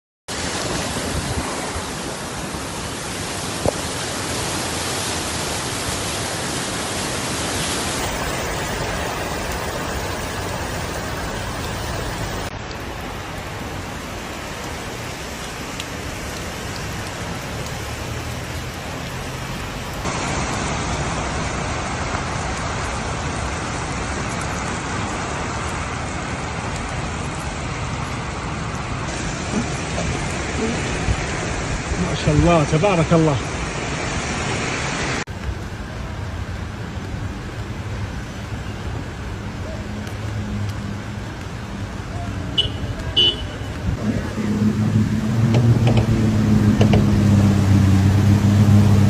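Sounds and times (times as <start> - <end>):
heavy rain: 0.3 - 49.0
running floodwater: 0.3 - 49.0.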